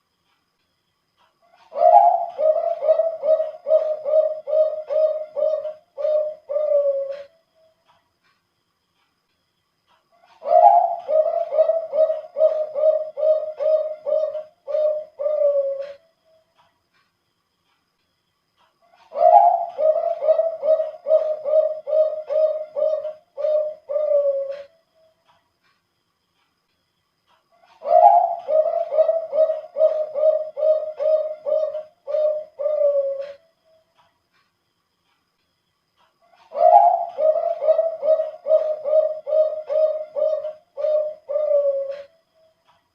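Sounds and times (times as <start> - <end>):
dove cooing: 1.5 - 7.4, 10.2 - 16.1, 19.0 - 24.8, 27.6 - 33.5, 36.3 - 42.2.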